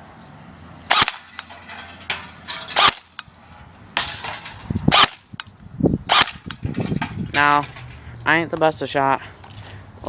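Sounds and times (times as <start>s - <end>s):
airsoft gun shots: 0.9s - 1.5s, 2.7s - 3.3s, 4.9s - 5.4s, 6.1s - 7.5s.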